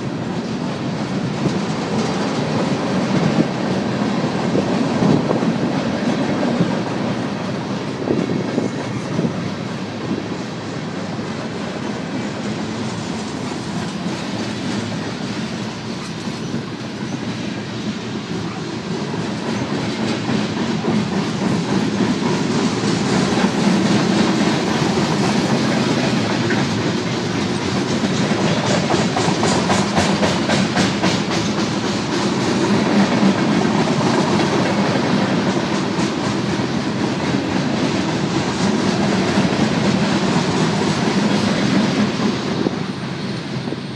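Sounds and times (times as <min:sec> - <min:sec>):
freight train cars rumbling: 0:00.0 - 0:43.9
wheels clicking over rail joints: 0:00.0 - 0:43.9.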